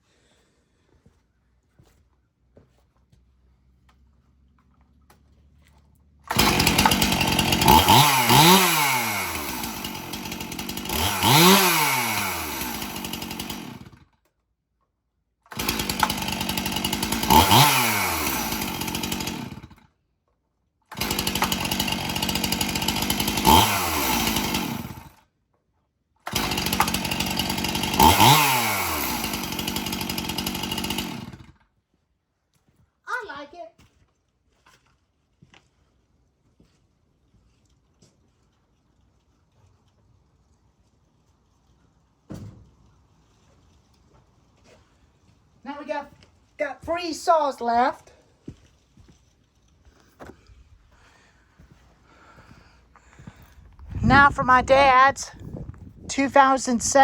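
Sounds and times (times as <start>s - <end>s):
chainsaw revving and idling: 6.3s - 14.0s, 15.5s - 19.9s, 20.9s - 25.2s, 26.3s - 31.6s, 54.0s - 55.4s, 56.1s - 57.0s.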